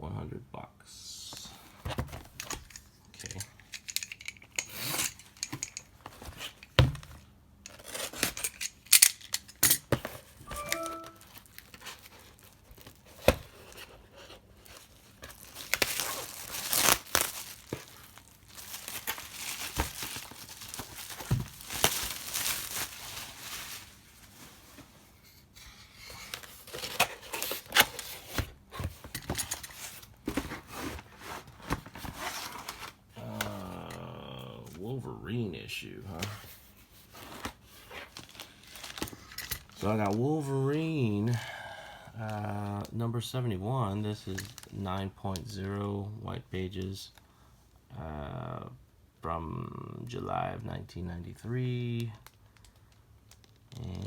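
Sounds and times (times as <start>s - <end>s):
packaging crinkling: 10.5s - 24.9s, 26.3s - 28.4s, 37.2s - 40.2s
cardboard box tearing: 11.4s - 23.2s, 26.4s - 28.4s.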